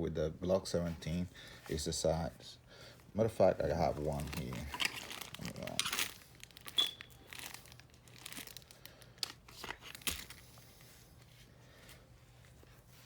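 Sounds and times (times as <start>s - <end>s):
crinkling and rustling: 3.4s - 13.0s.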